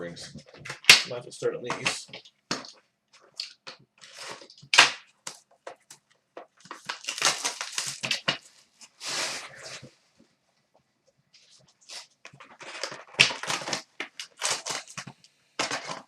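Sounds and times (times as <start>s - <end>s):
card pack wrappers tearing: 6.6s - 8.4s, 11.9s - 16.0s.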